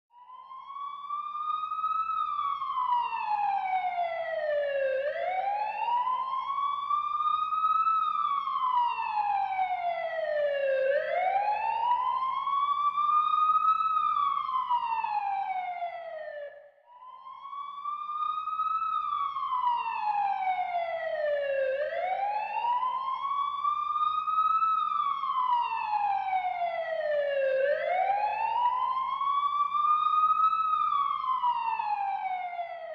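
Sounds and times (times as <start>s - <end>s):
ambulance siren wailing: 0.2s - 32.9s.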